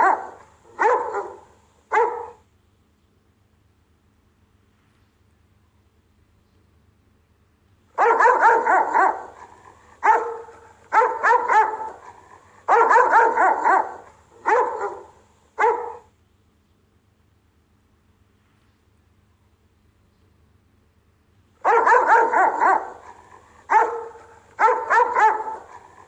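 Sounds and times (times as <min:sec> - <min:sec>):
dog barking: 0:00.0 - 0:02.4, 0:08.0 - 0:16.1, 0:21.6 - 0:26.0.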